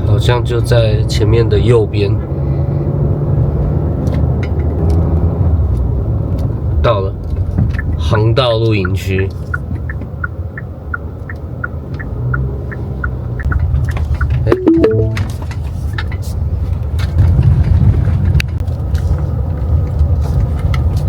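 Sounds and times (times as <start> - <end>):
car engine and road rumble: 0.0 - 14.6, 15.2 - 21.0
background music: 14.5 - 15.3
light ticking pattern: 14.5 - 15.3.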